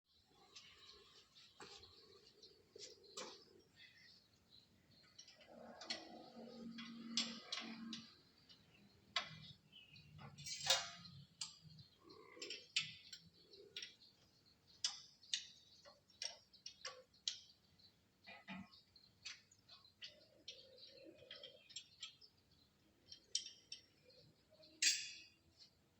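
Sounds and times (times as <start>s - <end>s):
metal tools clicking and tapping: 4.9s - 11.7s, 12.4s - 17.6s, 23.0s - 25.7s.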